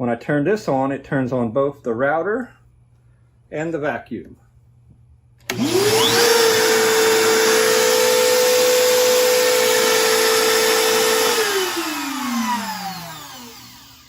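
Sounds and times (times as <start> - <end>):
router high whine: 5.4 - 14.0.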